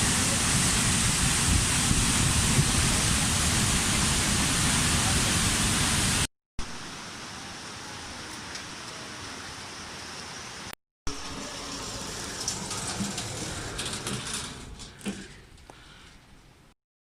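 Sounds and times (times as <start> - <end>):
waterfall stream rushing: 0.0 - 8.2.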